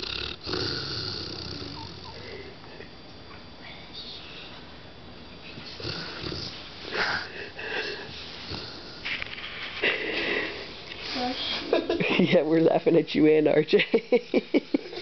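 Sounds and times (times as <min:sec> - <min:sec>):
dog snoring wheezily: 0:00.0 - 0:02.4, 0:05.7 - 0:09.2.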